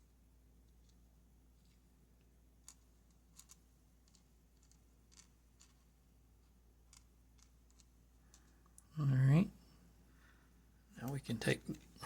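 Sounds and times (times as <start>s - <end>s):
small lock parts clicking: 2.6s - 5.9s, 6.9s - 8.7s.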